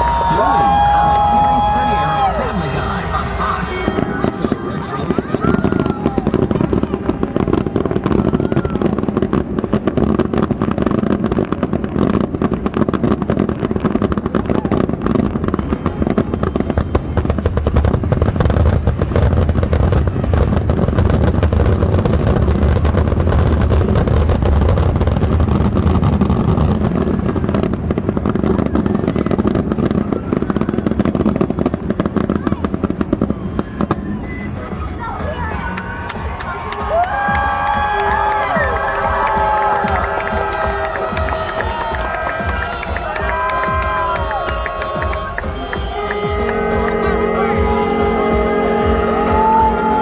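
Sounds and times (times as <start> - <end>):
heavy low rumble: 0.0 - 11.2, 34.8 - 50.0
fireworks bangs and crackles: 0.0 - 50.0.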